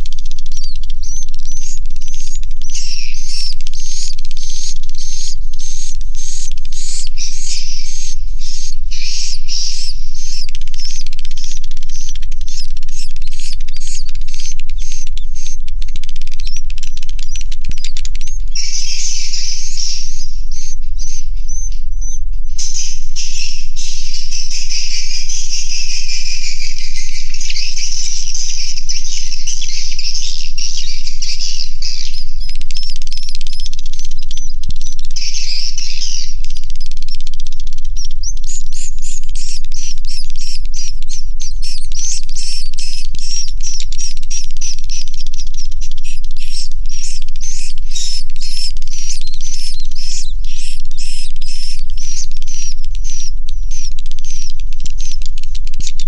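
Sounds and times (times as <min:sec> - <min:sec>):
swiftlets twittering: 0:04.5 - 0:19.9, 0:31.3 - 0:55.7.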